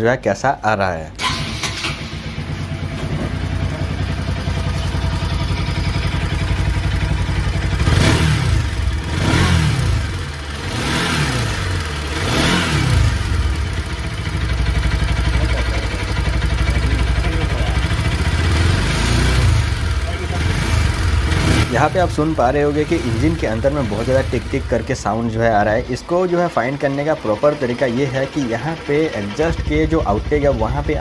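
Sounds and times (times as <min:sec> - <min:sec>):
motorcycle engine revving: 0:01.2 - 0:31.0
engine tappet ticking: 0:20.4 - 0:31.0.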